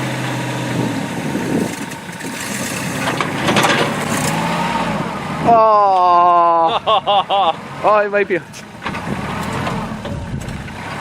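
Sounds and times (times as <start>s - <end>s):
low engine hum: 0.0s - 11.0s
rough mixed noise: 1.1s - 5.5s.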